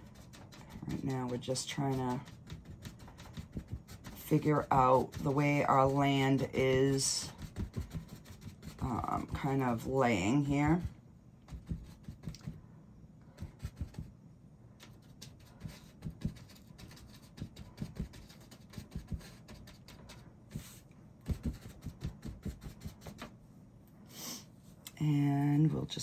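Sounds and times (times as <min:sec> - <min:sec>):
paint brush tapping on canvas: 0:11.5 - 0:12.6.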